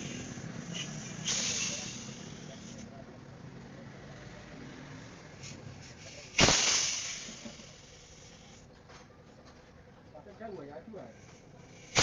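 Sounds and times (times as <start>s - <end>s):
pressurised gas hissing: 0.0s - 3.1s, 5.0s - 8.7s, 10.9s - 12.0s.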